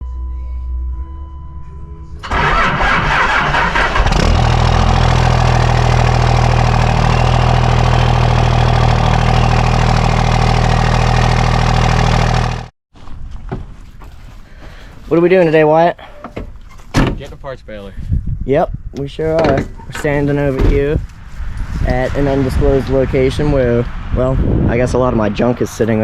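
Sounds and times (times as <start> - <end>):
vehicle engine starting and idling: 2.2 - 12.7.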